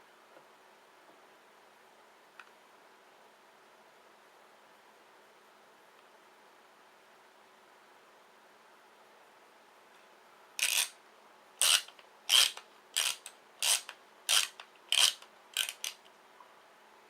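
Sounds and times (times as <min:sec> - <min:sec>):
pipe cutter wheel scraping: 0:11.6 - 0:16.0.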